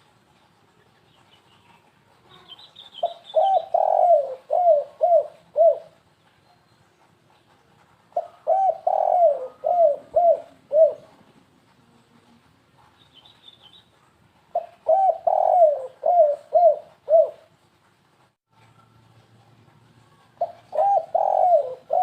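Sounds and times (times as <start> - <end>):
dove cooing: 2.3 - 6.0, 8.1 - 11.3, 14.5 - 17.5, 20.4 - 22.0.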